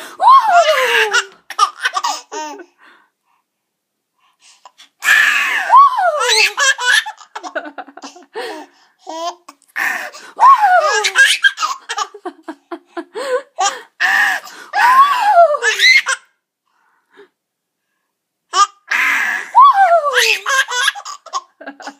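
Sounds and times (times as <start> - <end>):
baby laughing: 0.3 - 2.7, 5.0 - 8.5, 10.6 - 14.2, 15.6 - 16.3, 18.5 - 21.9.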